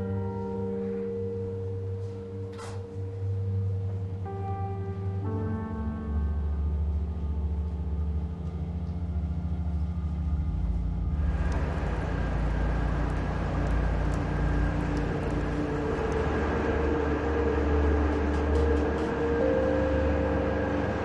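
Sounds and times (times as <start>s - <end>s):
soft held music tones: 0.0s - 21.0s
moving vehicle rumble: 9.0s - 21.0s.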